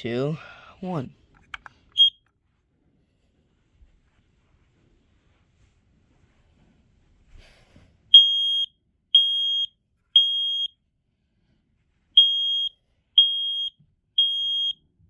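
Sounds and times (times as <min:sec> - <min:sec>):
smoke alarm beeping: 0:02.0 - 0:02.2, 0:08.2 - 0:10.7, 0:12.2 - 0:14.8.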